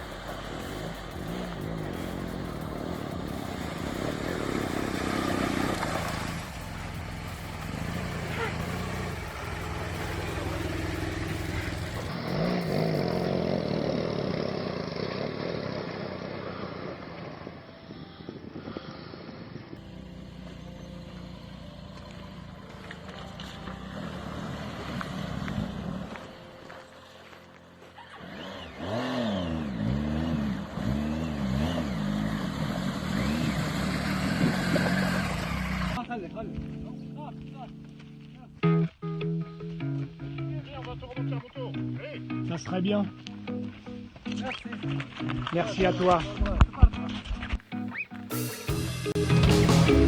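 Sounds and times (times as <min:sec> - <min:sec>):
off-road vehicle engine revving: 0:00.0 - 0:17.4, 0:19.8 - 0:26.3, 0:28.1 - 0:36.0.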